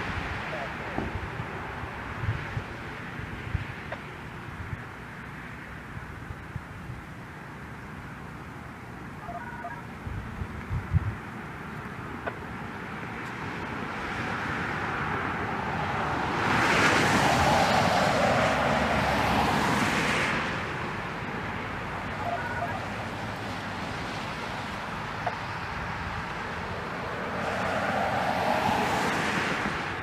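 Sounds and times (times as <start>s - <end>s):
traffic background: 0.0s - 30.0s
vehicle tyres rushing past: 13.4s - 20.9s, 22.0s - 30.0s.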